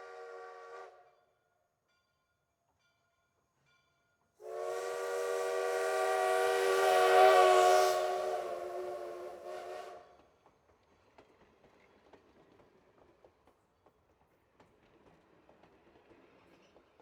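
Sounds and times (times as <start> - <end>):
train whistle blast: 0.0 - 1.1, 4.4 - 10.2.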